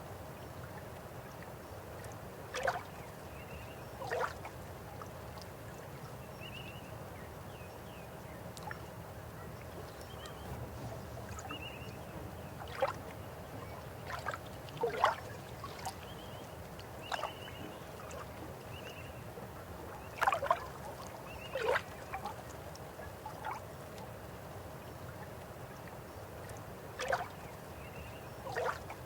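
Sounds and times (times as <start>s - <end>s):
river water flowing: 0.0s - 6.3s, 8.1s - 29.0s
water gurgles and plops: 9.8s - 16.3s, 28.5s - 29.0s.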